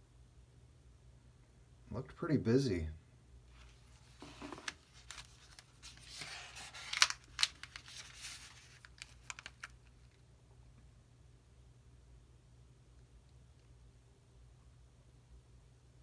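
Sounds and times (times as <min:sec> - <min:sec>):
paper pages rustling: 0:03.5 - 0:10.2.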